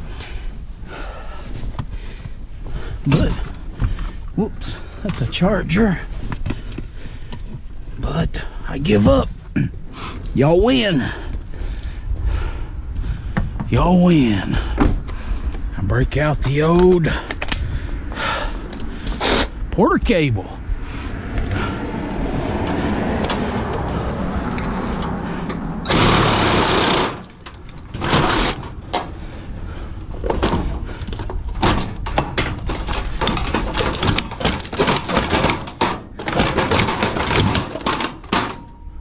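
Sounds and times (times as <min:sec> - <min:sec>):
reciprocating saw cutting metal: 0:25.9 - 0:27.3
metal pieces clanking: 0:31.2 - 0:38.9.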